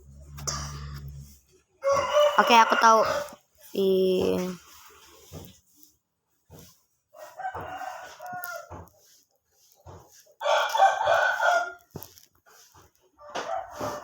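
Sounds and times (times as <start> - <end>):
rooster crowing: 1.8 - 3.4, 7.2 - 8.8, 10.4 - 11.8, 13.2 - 14.0.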